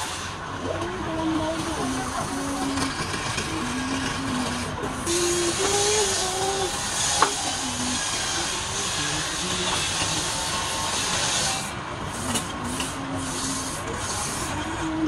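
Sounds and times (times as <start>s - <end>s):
wood lathe tool cutting hiss: 0.0s - 0.4s, 1.2s - 15.0s.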